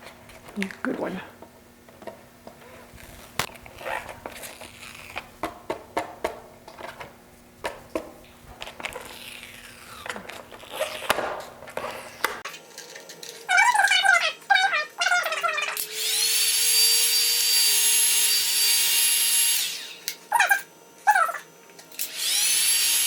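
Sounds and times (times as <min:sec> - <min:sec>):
decal crackling and tearing: 0:02.6 - 0:05.3, 0:08.7 - 0:11.2.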